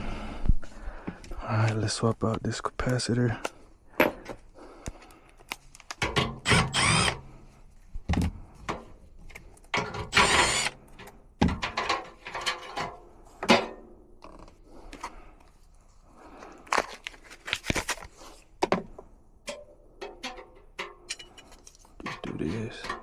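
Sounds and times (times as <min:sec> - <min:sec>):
tools clicking and knocking: 0:05.9 - 0:07.2, 0:08.1 - 0:14.5, 0:18.6 - 0:23.0.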